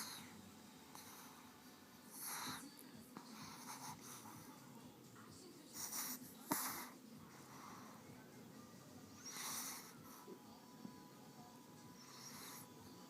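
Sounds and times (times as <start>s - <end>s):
dog snoring: 0.0s - 4.6s, 5.7s - 8.3s, 9.1s - 10.4s, 11.7s - 13.0s.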